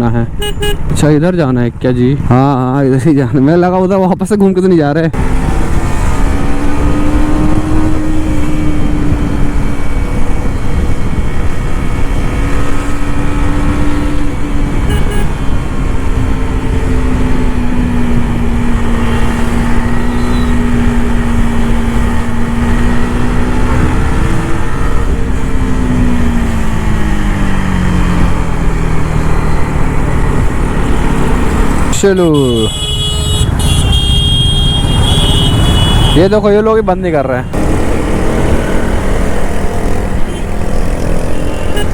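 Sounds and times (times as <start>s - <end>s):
motorcycle engine at part throttle: 37.5s - 41.9s.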